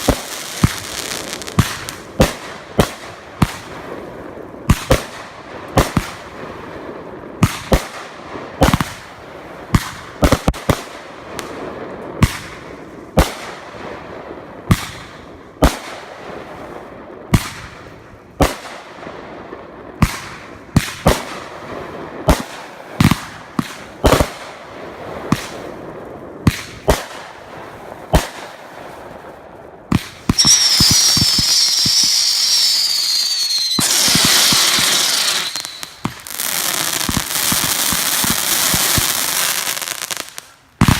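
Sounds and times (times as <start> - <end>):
firework crackling: 0.0 - 13.7, 22.2 - 40.9
fireworks bangs: 0.0 - 40.9
firework hissing whistle: 30.4 - 37.0.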